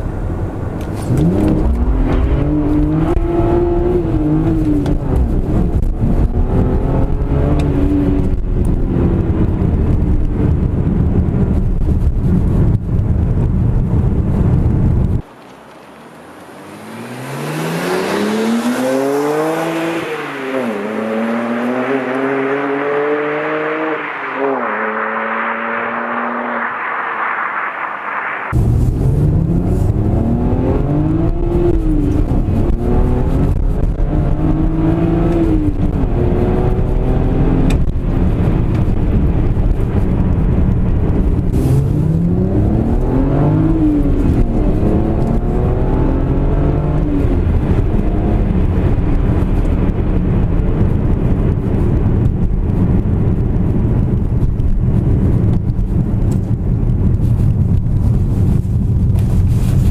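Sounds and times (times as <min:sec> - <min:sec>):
car engine revving: 0:00.0 - 0:10.8, 0:16.2 - 0:52.2
exhaust crackles: 0:00.0 - 0:59.9.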